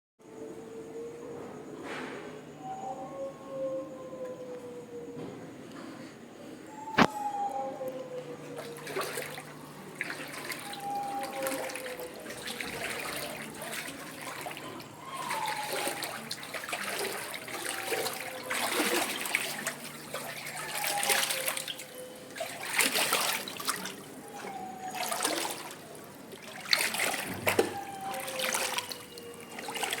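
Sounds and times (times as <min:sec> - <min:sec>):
floodwater splashing and trickling: 0:08.4 - 0:30.0.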